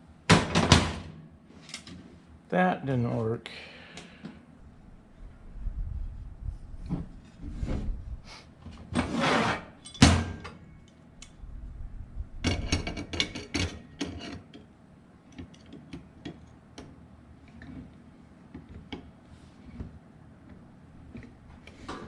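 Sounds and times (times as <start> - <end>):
hand tools scraping metal: 9.0 - 10.0.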